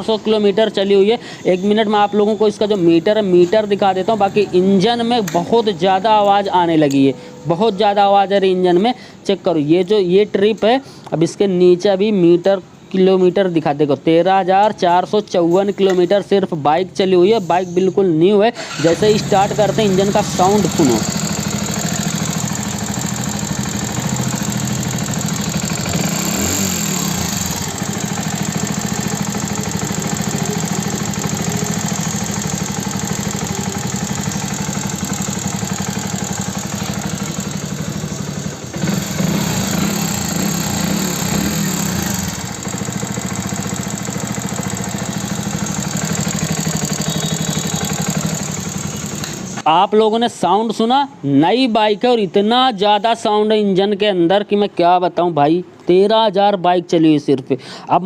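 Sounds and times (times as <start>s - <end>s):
motorcycle engine clattering: 18.6s - 49.6s.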